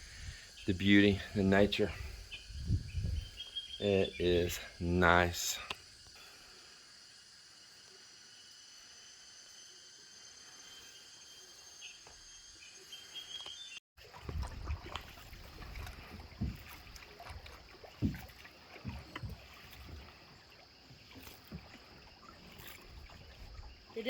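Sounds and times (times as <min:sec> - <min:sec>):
paddles knocking on canoe: 0:14.0 - 0:23.9.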